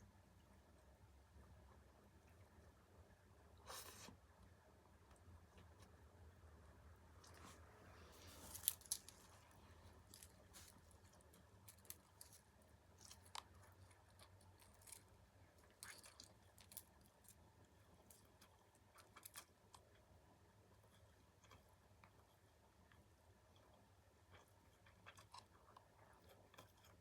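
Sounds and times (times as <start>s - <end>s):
chewing with crunches: 8.2s - 27.0s.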